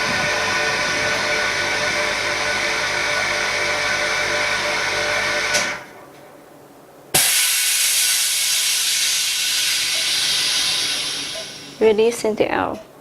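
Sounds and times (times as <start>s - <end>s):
machine humming and hissing: 0.0s - 6.1s, 7.1s - 12.0s
rush of released air: 7.2s - 11.8s.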